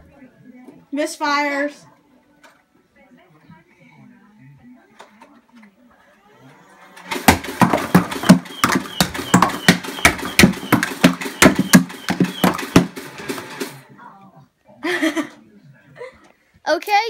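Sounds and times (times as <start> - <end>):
sharp dart shots: 7.1 - 13.6.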